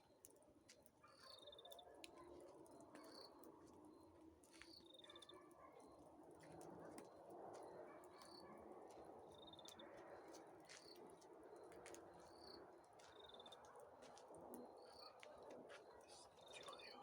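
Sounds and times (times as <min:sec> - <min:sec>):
faint campfire crackling: 0:00.0 - 0:17.0.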